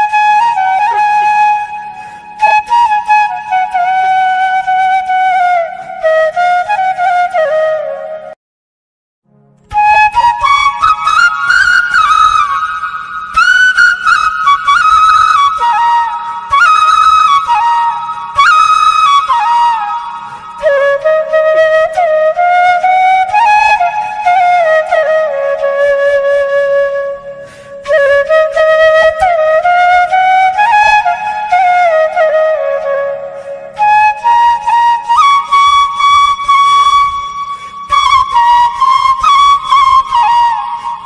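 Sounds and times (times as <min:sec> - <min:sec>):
solo flute melody: 0:00.0 - 0:08.4, 0:09.6 - 0:41.0.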